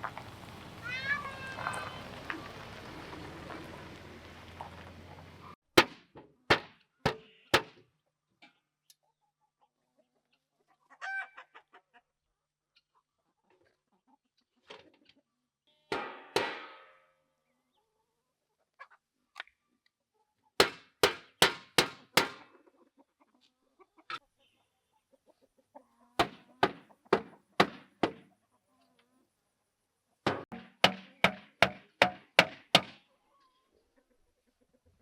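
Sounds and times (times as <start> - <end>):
chickens clucking: 0.0 - 5.6, 9.0 - 15.4, 17.6 - 19.2, 22.3 - 31.3, 33.0 - 35.0.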